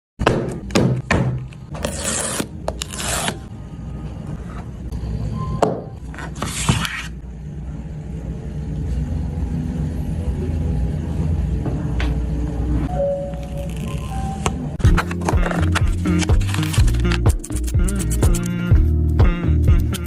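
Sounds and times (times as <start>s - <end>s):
cardboard rubbing and scraping: 14.8s - 18.5s.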